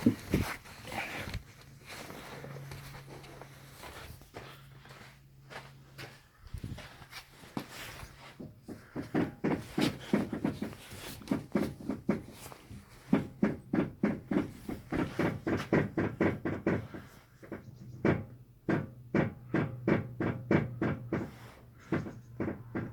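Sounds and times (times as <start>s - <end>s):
rapid knocking from car steering: 8.4s - 22.9s.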